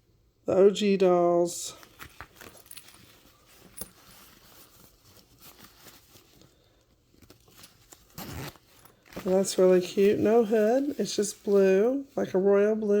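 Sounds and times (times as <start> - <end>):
fabric rustling and small clicks: 7.1 - 11.6.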